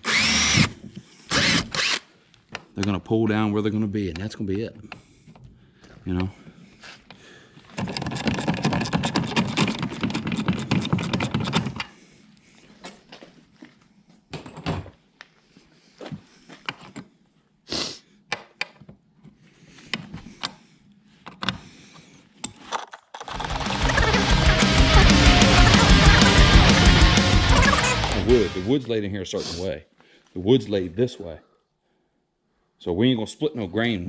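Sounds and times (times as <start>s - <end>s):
rapid mechanical rattle: 22.8s - 28.7s.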